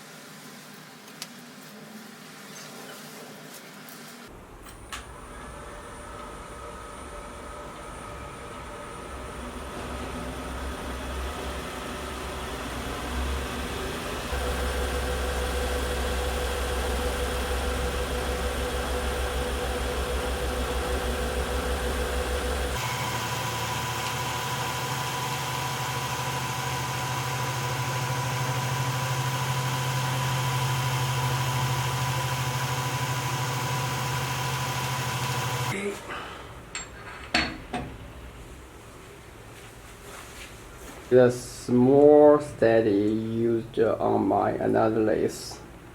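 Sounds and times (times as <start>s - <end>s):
wood lathe humming and whining: 7.2s - 35.8s.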